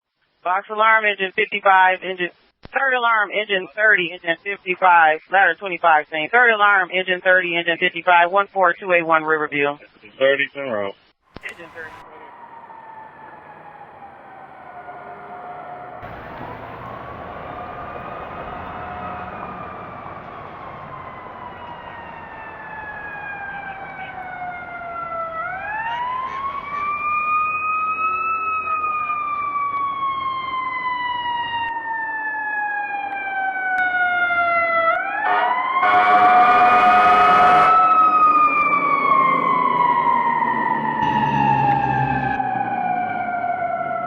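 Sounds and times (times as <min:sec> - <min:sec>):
fire truck siren wailing: 0:11.4 - 0:44.0
loud horn blast: 0:35.2 - 0:38.0, 0:41.0 - 0:42.4.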